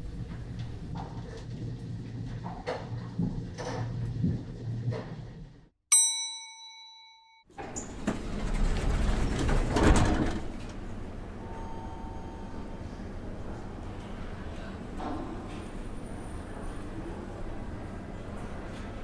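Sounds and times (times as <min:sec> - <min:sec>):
elevator hum with clicks: 0:00.0 - 0:05.2, 0:07.6 - 0:19.0
elevator doors sliding open: 0:07.5 - 0:19.0
elevator arrival chime: 0:11.2 - 0:12.9.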